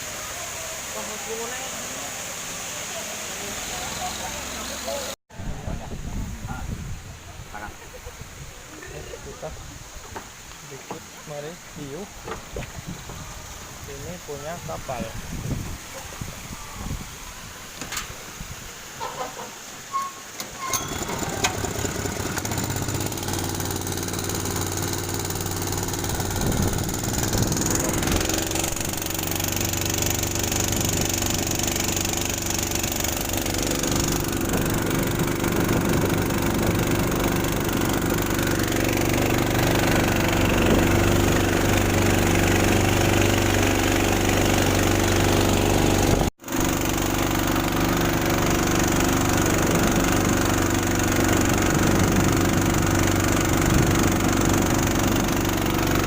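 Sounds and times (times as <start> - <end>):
boat engine running: 0.0 - 6.7, 20.5 - 56.0.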